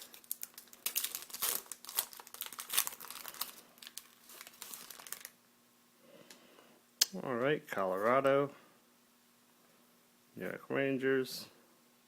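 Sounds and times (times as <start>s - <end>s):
foil wrapper crinkling: 0.0s - 5.4s.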